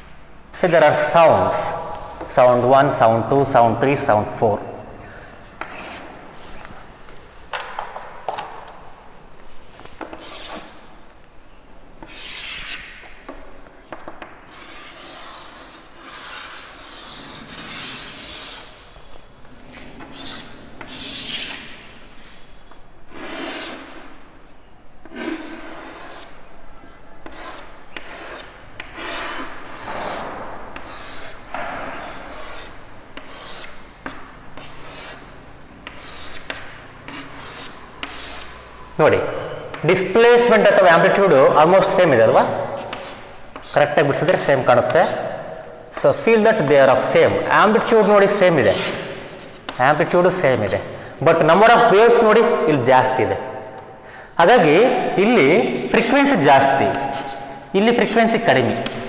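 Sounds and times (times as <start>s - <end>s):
chalk scraping on a chalkboard: 5.6s - 6.6s, 10.0s - 10.8s, 12.0s - 12.9s, 14.5s - 18.7s, 19.7s - 22.4s, 23.1s - 24.1s, 25.1s - 26.4s, 27.2s - 30.2s, 30.8s - 31.4s, 32.0s - 38.6s, 41.9s - 46.4s, 47.8s - 49.8s, 56.6s - 57.5s.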